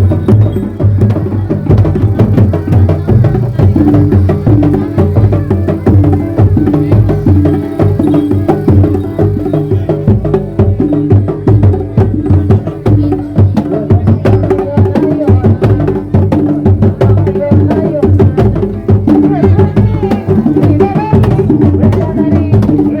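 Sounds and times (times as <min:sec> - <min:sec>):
rapid hand-drum strokes: 0:00.0 - 0:23.0
wavering melody line: 0:03.2 - 0:13.4.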